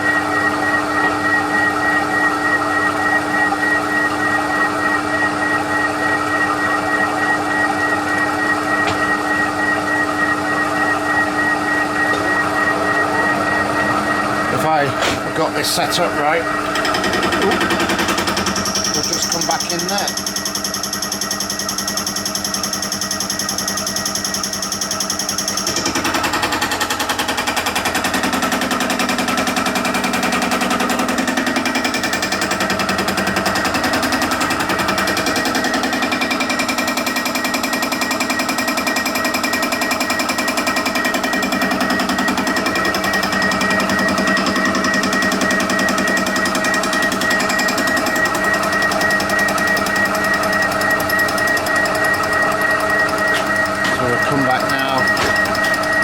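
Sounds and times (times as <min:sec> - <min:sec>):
spindle gearing whine: 0:00.0 - 0:56.0
milling cutter hammering: 0:14.6 - 0:56.0.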